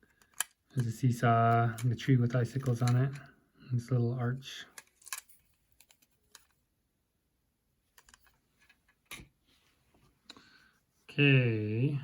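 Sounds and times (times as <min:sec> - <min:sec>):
plastic toy bricks clicking: 0:00.0 - 0:00.6, 0:04.7 - 0:06.5.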